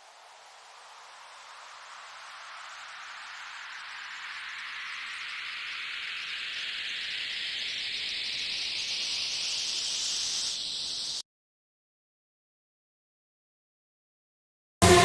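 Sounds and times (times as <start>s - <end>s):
synthesized white-noise riser: 0.0s - 11.2s.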